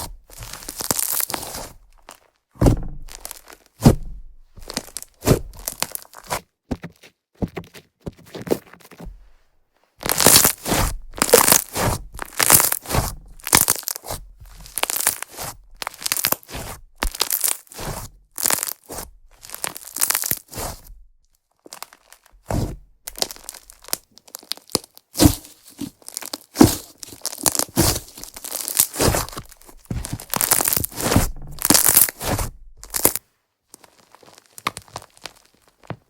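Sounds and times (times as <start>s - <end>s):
slime crackling and popping: 0.3s - 1.6s, 3.1s - 3.9s, 4.6s - 6.3s, 10.0s - 20.8s, 21.7s - 33.2s, 33.8s - 35.8s.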